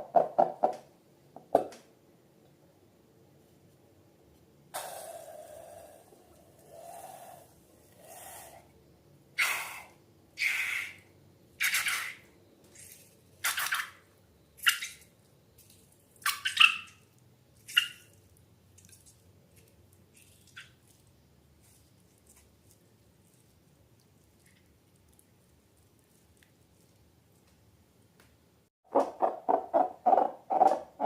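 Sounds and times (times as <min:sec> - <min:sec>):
wet slime squelching: 0:14.6 - 0:27.7.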